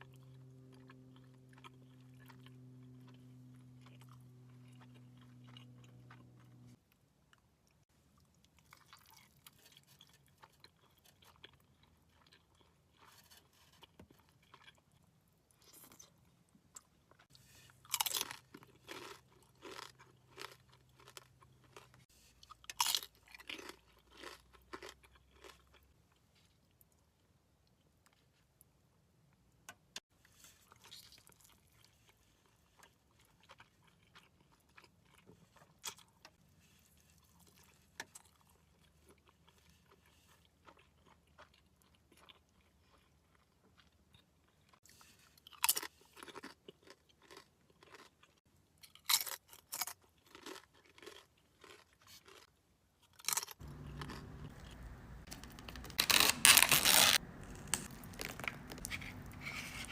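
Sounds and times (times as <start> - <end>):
soft chewing: 0.0 - 28.8, 30.1 - 56.0, 57.2 - 59.9
crunching bites into tortillas: 22.6 - 25.8, 53.1 - 59.9.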